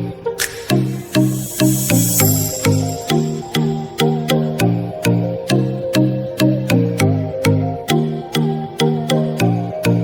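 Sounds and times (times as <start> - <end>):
bass and synth melody: 0.0 - 10.0
sharp percussive hits: 0.4 - 3.9.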